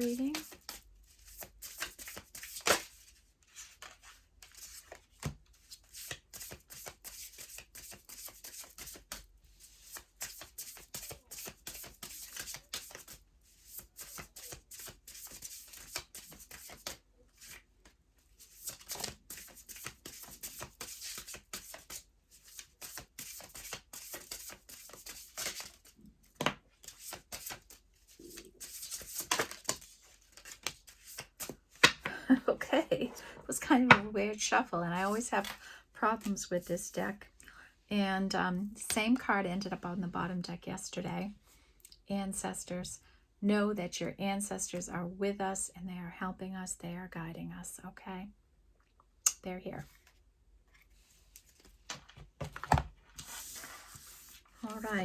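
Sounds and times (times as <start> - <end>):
cards being shuffled: 0.1 - 9.2, 9.8 - 17.6, 18.4 - 32.2, 49.9 - 55.0.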